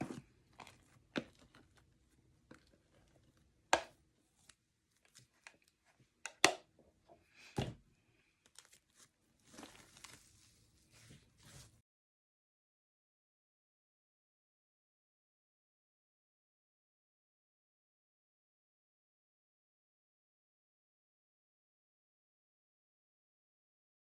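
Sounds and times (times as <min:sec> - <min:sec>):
crinkly rustle: 0:08.4 - 0:11.8.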